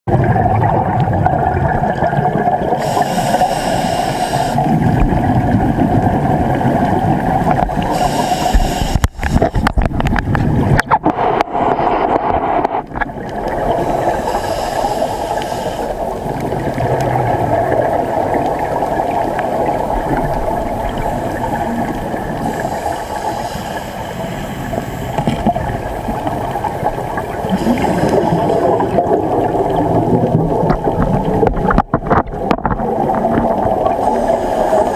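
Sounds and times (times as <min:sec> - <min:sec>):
exhaled bubbles hissing: 0:00.1 - 0:34.9
muffled underwater ambience: 0:00.1 - 0:34.9
crackling and knocking: 0:30.6 - 0:33.5.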